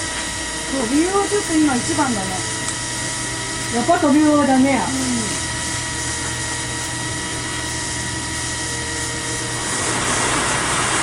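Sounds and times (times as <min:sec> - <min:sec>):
drone propellers whining: 0:00.0 - 0:11.0.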